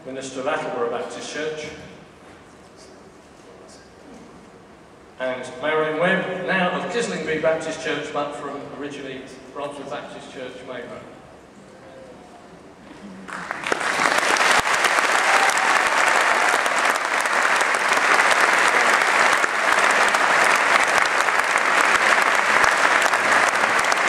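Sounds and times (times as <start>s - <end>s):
audience applauding: 13.2s - 24.0s.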